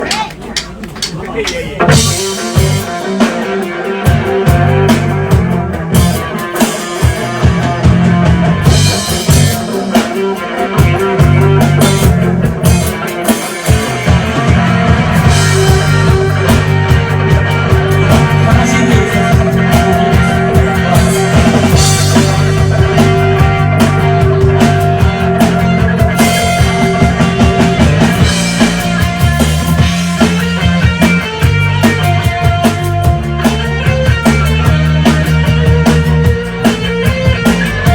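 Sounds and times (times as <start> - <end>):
drum kit: 0.0 - 37.9
guitar: 0.0 - 37.9
low bass line: 14.1 - 37.9.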